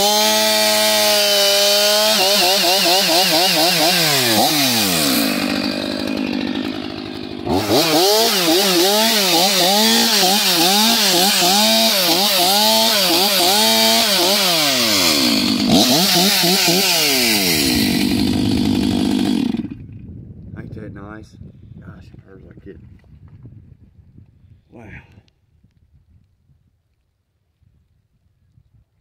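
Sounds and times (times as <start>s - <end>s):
chainsaw idling and revving: 0.0s - 19.9s.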